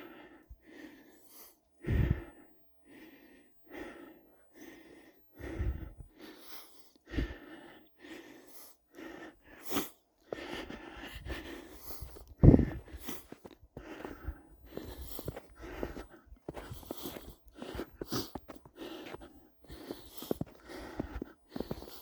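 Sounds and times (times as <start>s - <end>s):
footsteps crunching in snow: 11.8s - 22.0s.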